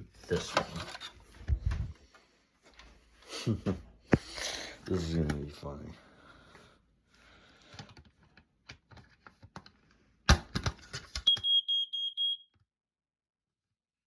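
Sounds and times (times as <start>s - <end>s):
smoke alarm high-pitched tone: 11.3s - 12.5s.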